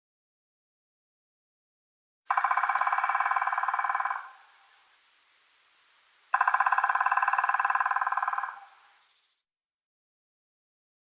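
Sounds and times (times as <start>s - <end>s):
bird rattling trill: 2.3s - 4.4s, 6.3s - 9.2s.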